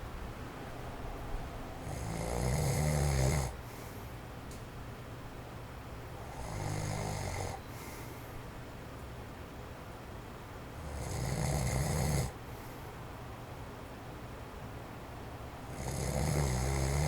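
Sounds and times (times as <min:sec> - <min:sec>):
electric fan hiss: 0:00.0 - 0:17.0
man snoring heavily: 0:01.8 - 0:03.6, 0:06.2 - 0:07.6, 0:10.8 - 0:12.4, 0:15.7 - 0:17.0.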